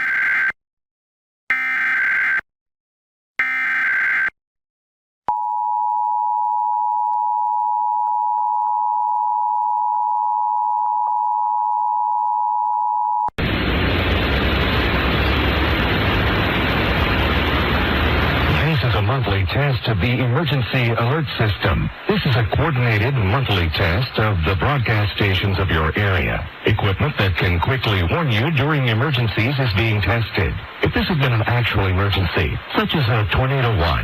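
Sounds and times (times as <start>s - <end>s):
static hiss: 13.4s - 34.0s.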